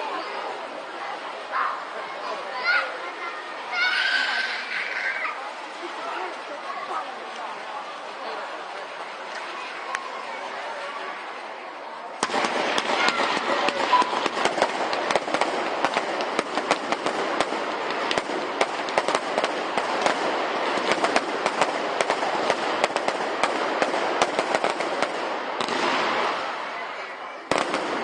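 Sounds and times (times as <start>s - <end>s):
fireworks crackling: 12.1s - 28.0s.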